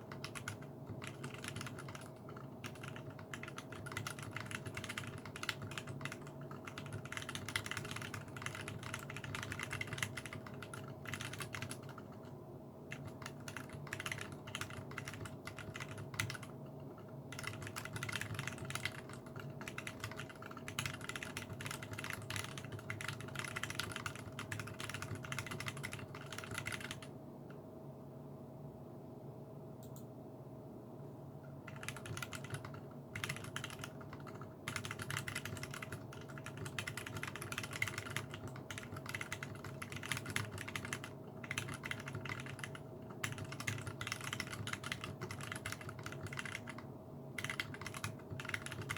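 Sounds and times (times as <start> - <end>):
mechanical keyboard typing: 0.0 - 27.1, 31.6 - 48.9.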